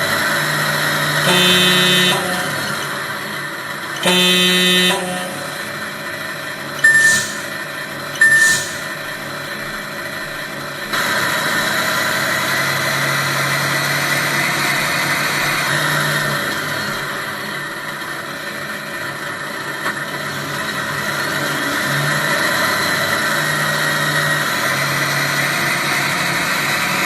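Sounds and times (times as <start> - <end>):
simulated diesel engine from speaker: 0.0 - 27.0
truck horn blast: 1.2 - 2.9, 4.0 - 5.8.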